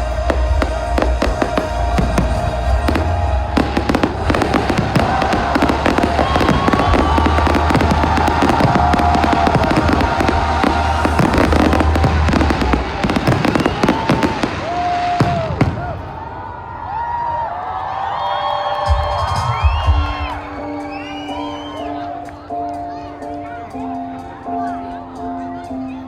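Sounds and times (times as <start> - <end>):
fireworks bangs and crackles: 0.1 - 16.5.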